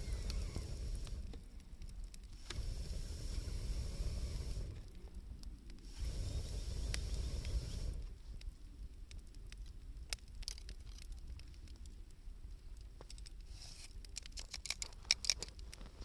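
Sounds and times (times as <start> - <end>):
wood fire crackling: 0.0 - 16.0
low rumble: 2.4 - 5.0.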